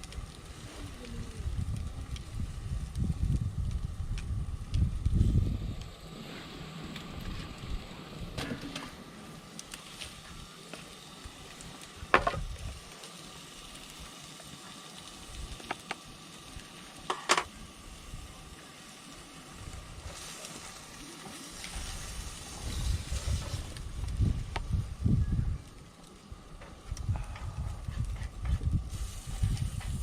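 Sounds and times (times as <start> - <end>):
campfire hissing and crackling: 0.0 - 30.0.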